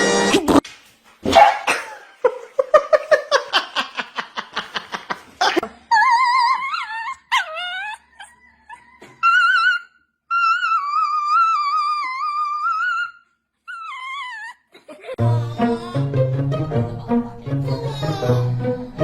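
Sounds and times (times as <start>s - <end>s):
dog yipping: 1.3s - 2.0s, 5.9s - 14.7s
dog whining: 5.9s - 14.7s.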